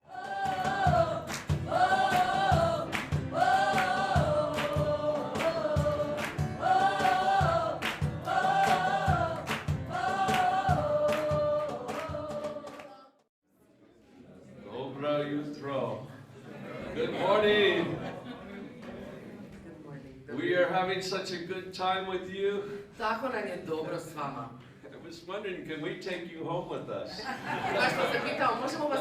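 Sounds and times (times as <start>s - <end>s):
gospel choir singing over a beat: 0.0s - 13.3s.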